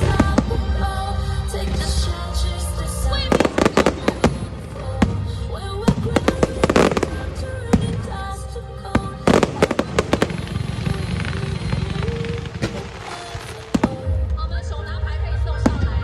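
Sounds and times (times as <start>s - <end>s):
fireworks bangs and crackles: 0.0s - 0.8s, 3.2s - 14.4s
music playing: 0.0s - 16.0s.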